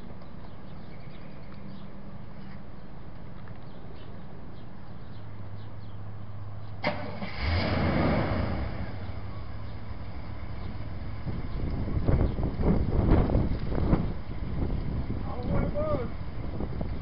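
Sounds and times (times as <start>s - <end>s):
truck engine idling: 8.8s - 17.0s.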